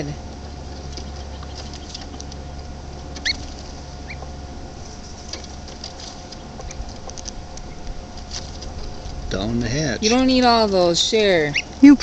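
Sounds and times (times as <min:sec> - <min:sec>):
small bird chirping: 0:00.8 - 0:02.2, 0:03.2 - 0:04.3, 0:11.4 - 0:11.9.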